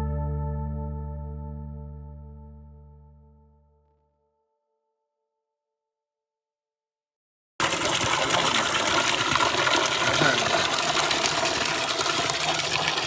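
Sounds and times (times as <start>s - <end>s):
running water rushing: 7.6s - 13.0s.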